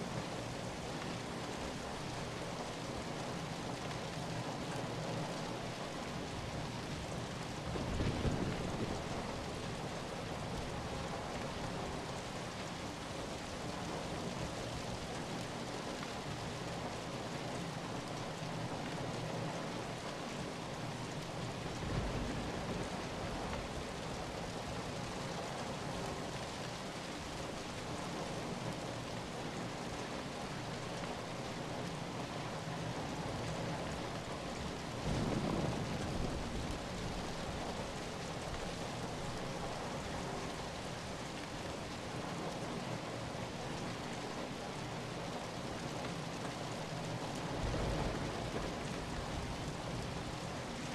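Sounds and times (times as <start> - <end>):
steady rain falling: 0.0 - 50.9.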